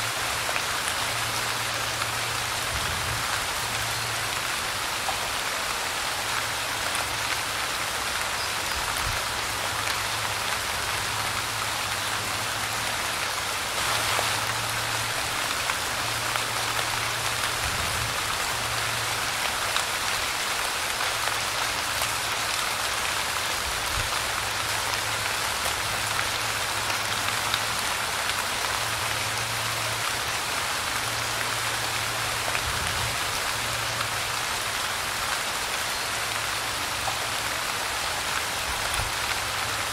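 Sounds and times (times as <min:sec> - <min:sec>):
light rain falling: 0:00.0 - 0:39.9.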